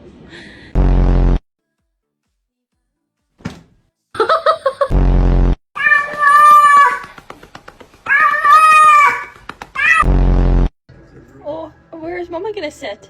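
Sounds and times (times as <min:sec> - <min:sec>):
low buzzing sound effect: 0:00.8 - 0:01.4
cat meowing: 0:05.8 - 0:07.0, 0:08.1 - 0:10.1.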